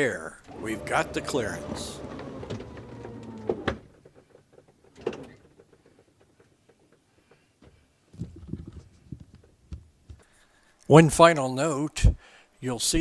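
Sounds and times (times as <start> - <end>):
motor humming: 0.4 - 3.9
faint knocks and clicks: 1.6 - 10.3.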